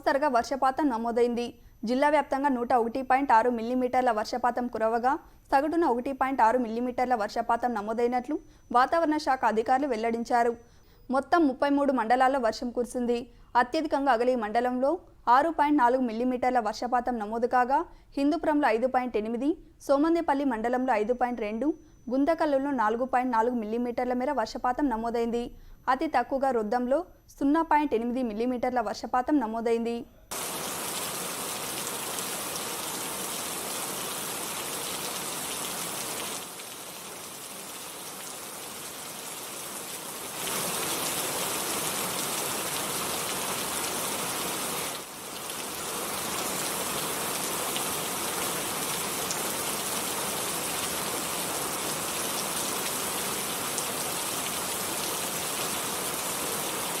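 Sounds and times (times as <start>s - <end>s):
steady rain falling: 30.3s - 57.0s.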